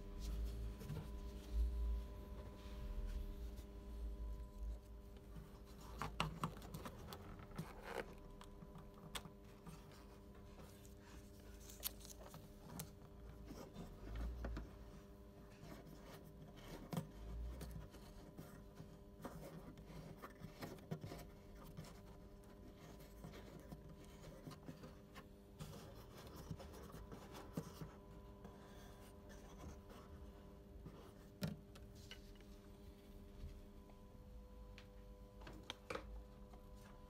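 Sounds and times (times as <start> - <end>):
low hum: 0.0 - 5.6.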